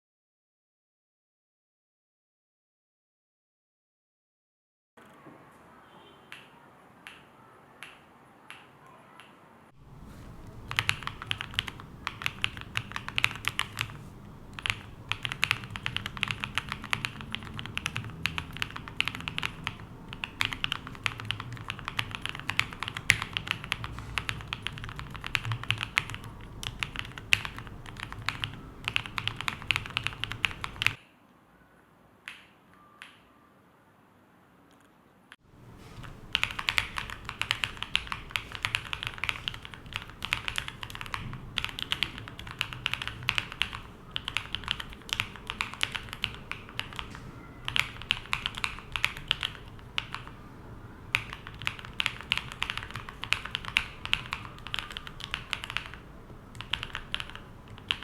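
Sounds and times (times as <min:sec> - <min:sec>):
mechanical keyboard typing: 0:10.5 - 0:31.0, 0:35.8 - 0:50.4, 0:51.1 - 0:58.0.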